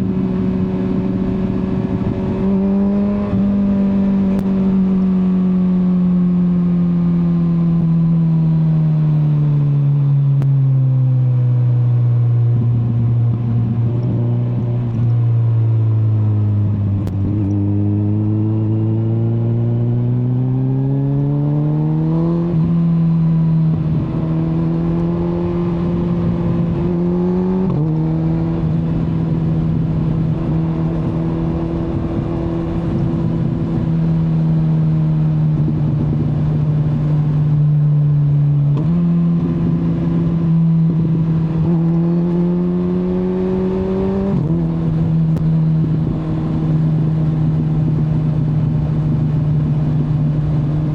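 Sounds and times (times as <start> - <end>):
wind and road noise: 0.0 - 50.9.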